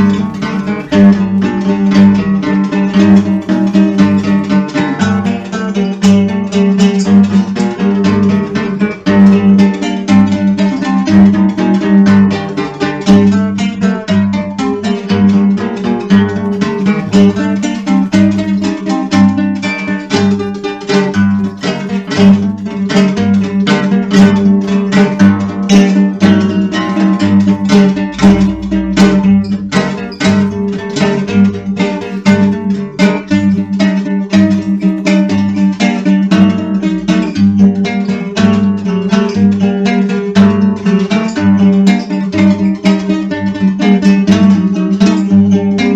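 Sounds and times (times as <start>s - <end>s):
plucked acoustic guitar: 0.0s - 45.9s
slow bass pulse: 26.2s - 33.7s.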